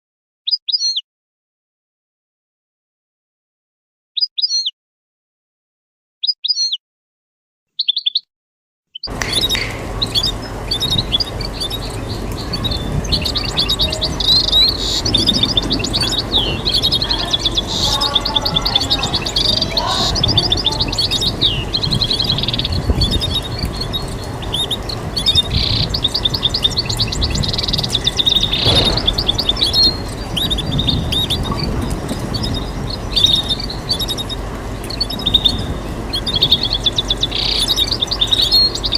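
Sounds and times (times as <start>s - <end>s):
finch chirping and twittering: 0.5s - 1.0s, 4.2s - 4.7s, 6.2s - 6.8s, 7.8s - 8.2s, 9.0s - 38.9s
steady background noise: 9.1s - 38.9s.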